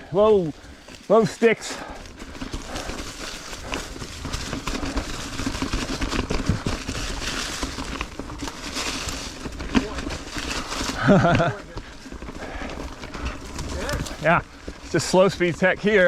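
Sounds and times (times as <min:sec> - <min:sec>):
bike tyres crunching over rock: 0:00.0 - 0:16.0
bike knocks and rattles: 0:02.1 - 0:16.0.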